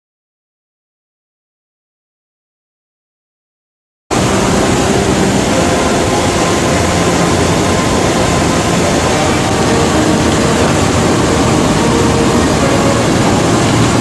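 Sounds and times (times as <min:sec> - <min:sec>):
floodwater rushing: 0:04.1 - 0:14.0.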